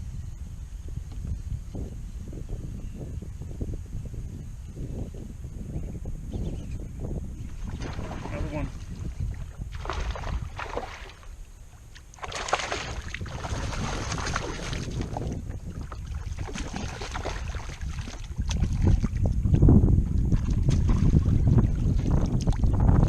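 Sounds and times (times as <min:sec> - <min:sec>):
wind buffeting microphone: 0:00.0 - 0:23.0
water sloshing around kayak: 0:07.4 - 0:23.0.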